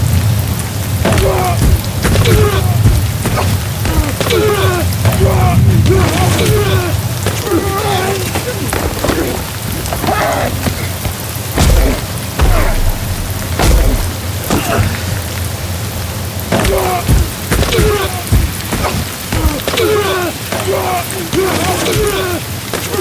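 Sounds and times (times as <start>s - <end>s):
steady rain: 0.0s - 23.0s
heavy low thuds: 1.0s - 6.0s, 10.6s - 15.3s
men grunting and groaning: 1.0s - 15.3s, 16.5s - 23.0s.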